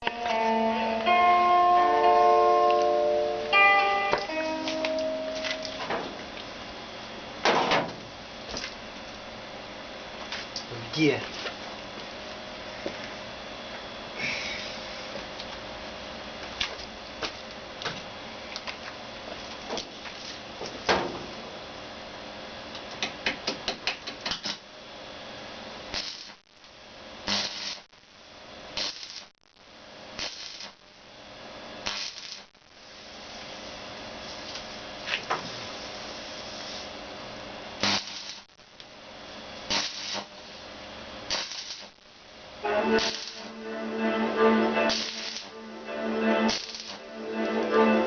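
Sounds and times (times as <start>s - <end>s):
clicks and knocks of hand work: 22.9s - 24.6s
short bursts of hiss: 37.8s - 38.5s, 39.7s - 40.3s, 42.9s - 43.5s, 44.8s - 45.5s.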